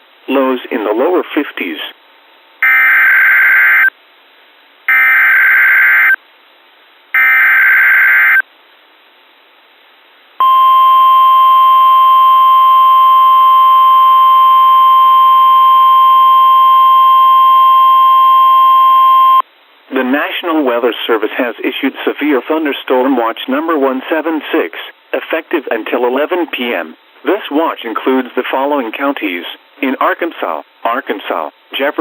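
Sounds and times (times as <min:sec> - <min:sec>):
steady warning alarm tone: 0:02.6 - 0:03.9, 0:04.9 - 0:06.2, 0:07.2 - 0:08.4, 0:10.4 - 0:19.4.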